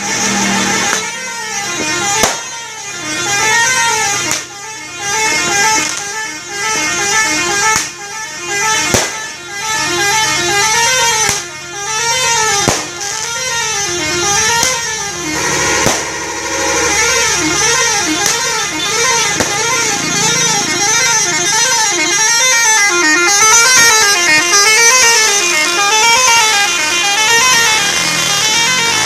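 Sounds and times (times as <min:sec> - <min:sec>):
multi-tone bus horn tune: 0:00.0 - 0:29.0
sharp pops: 0:04.2 - 0:04.5, 0:08.9 - 0:09.3, 0:12.6 - 0:13.4.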